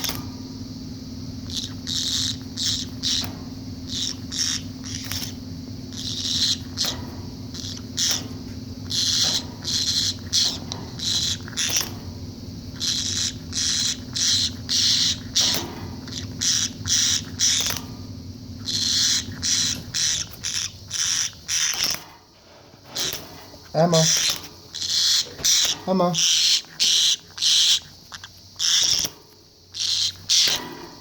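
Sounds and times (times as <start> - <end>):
parrot raspy bursts: 12.8 - 17.8, 18.6 - 22.1, 22.9 - 30.6.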